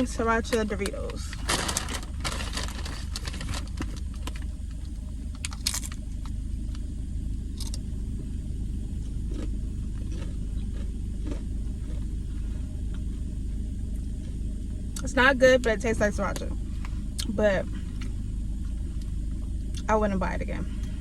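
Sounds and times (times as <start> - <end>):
steady low rumble: 0.0 - 21.0
chips crunching: 0.4 - 6.4, 7.5 - 7.8, 9.0 - 13.1.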